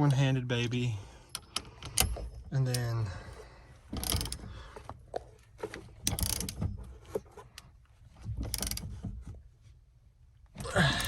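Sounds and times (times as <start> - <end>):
ratchet wrench clicking: 4.0 - 4.4, 6.1 - 6.6, 8.5 - 8.8.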